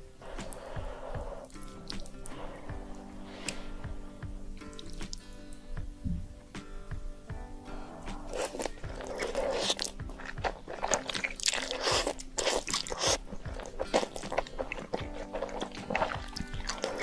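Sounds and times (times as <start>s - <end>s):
wet mouth noises: 0.0s - 3.8s, 8.1s - 17.0s
person chewing crunchy food: 0.2s - 3.6s, 8.2s - 17.0s.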